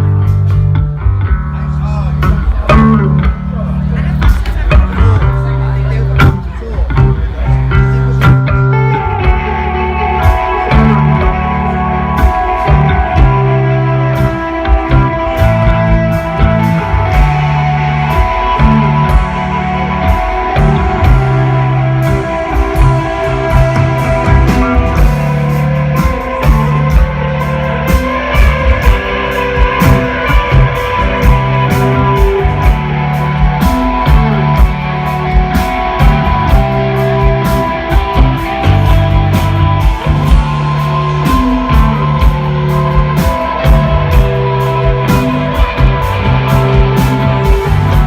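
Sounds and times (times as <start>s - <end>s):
bass line: 0.0s - 48.0s
live rock band: 0.0s - 48.0s
drum and cymbal hits: 12.2s - 48.0s.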